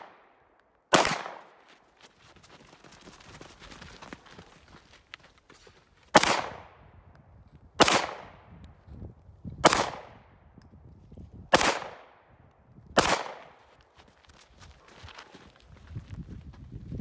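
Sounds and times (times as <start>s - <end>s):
pistol shots echoing: 0.0s - 1.5s, 6.1s - 6.7s, 7.8s - 8.4s, 9.6s - 10.1s, 11.5s - 12.2s, 13.0s - 13.6s.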